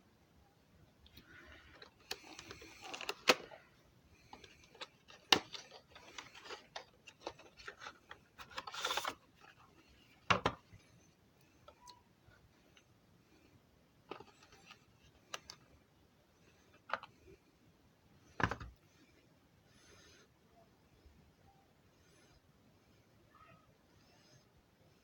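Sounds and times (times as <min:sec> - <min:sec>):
packaging rubbing and scraping: 0:01.5 - 0:03.6, 0:04.3 - 0:09.7.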